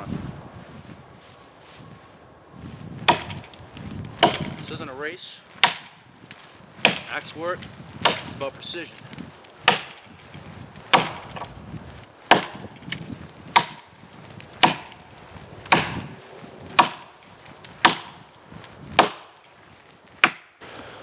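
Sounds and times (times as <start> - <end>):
axe chopping into log: 3.0 - 3.5, 4.2 - 4.7, 5.6 - 6.0, 6.8 - 7.3, 8.0 - 8.4, 9.6 - 10.3, 10.9 - 11.5, 12.3 - 13.9, 14.6 - 15.0, 15.7 - 16.2, 16.8 - 17.2, 17.8 - 18.2, 18.9 - 19.4, 20.2 - 20.6.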